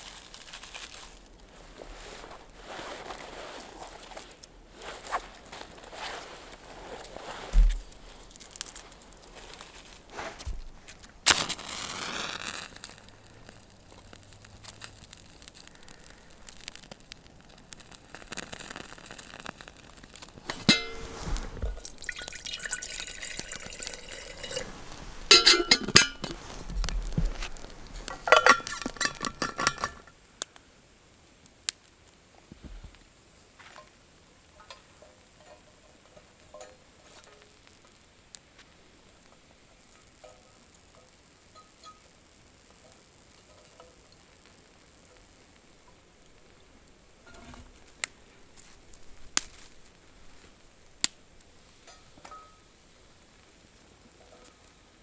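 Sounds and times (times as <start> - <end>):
liquid pouring and stirring: 20.2 - 30.1
pot and utensils clinking: 20.4 - 30.1.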